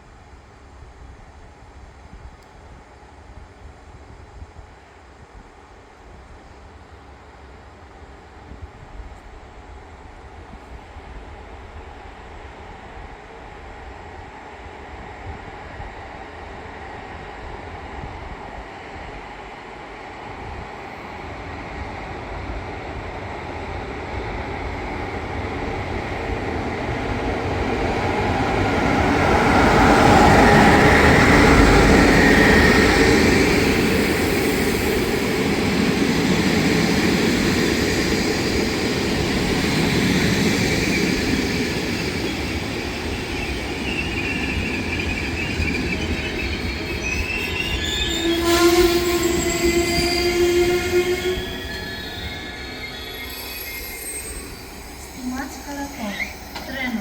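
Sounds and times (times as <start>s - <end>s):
train rumbling: 6.3s - 57.0s
steady pitched squeal: 24.9s - 57.0s.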